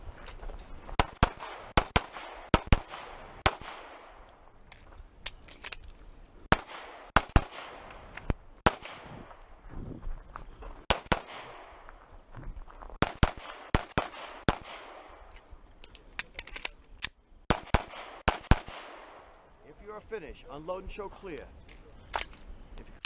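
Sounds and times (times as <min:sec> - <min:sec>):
pistol shots: 0:01.0 - 0:04.3, 0:06.5 - 0:08.0, 0:08.6 - 0:09.3, 0:10.9 - 0:11.8, 0:13.0 - 0:15.2, 0:17.5 - 0:19.3.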